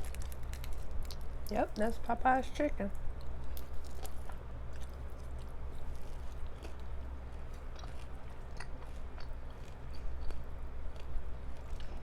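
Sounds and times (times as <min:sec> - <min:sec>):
chewing crispy chicken: 0:00.0 - 0:02.0, 0:02.9 - 0:12.0
room fan humming: 0:00.0 - 0:12.0.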